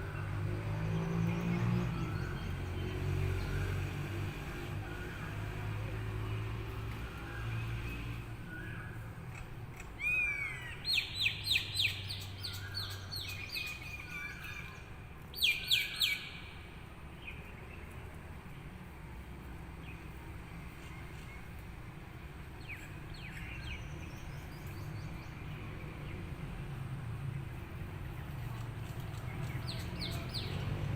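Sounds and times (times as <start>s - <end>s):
birds chirping: 22.5s - 30.9s.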